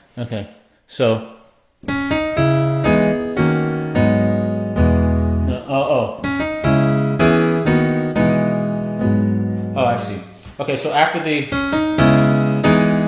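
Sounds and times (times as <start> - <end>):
electric piano jazz chords: 1.8 - 10.5, 11.4 - 13.0.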